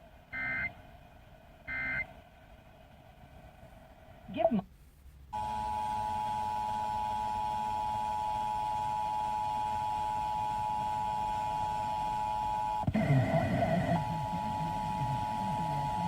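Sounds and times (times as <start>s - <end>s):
muffled voice-like sound: 12.9s - 16.0s.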